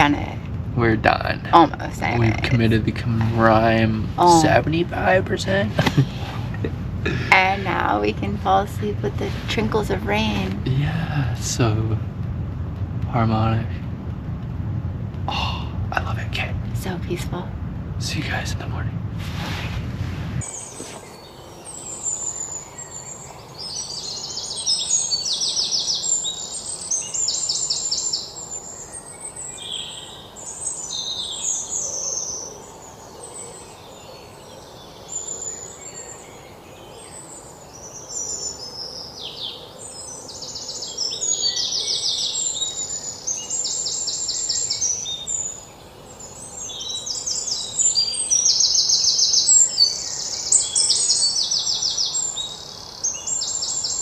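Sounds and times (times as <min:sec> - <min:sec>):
faint background hiss: 0:00.0 - 0:54.0
songbirds trilling: 0:20.4 - 0:54.0.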